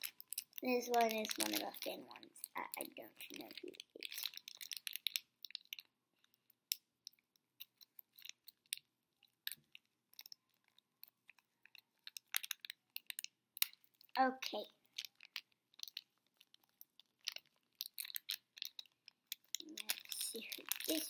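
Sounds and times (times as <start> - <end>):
plastic packaging crinkling and tearing: 0.0 - 5.6, 17.3 - 21.0.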